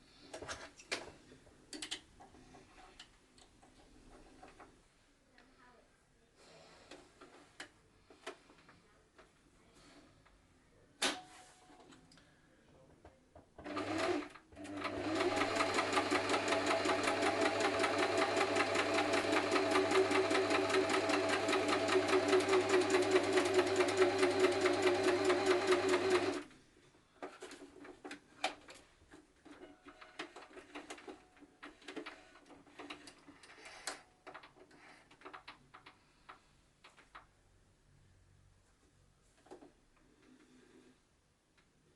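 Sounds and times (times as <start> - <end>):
sewing machine stitching: 13.6 - 26.5.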